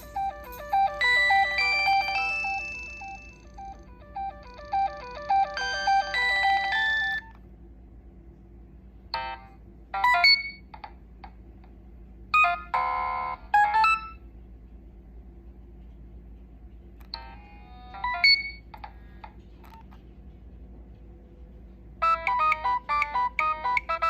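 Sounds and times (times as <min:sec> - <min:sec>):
electronic phone ringtone melody: 0:00.0 - 0:07.3, 0:12.4 - 0:14.2, 0:22.0 - 0:24.0
faint steady hum: 0:00.0 - 0:24.0.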